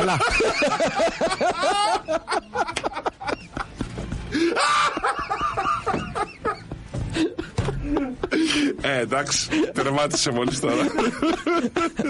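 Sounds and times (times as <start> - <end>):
men laughing and exclaiming: 0.0 - 12.0.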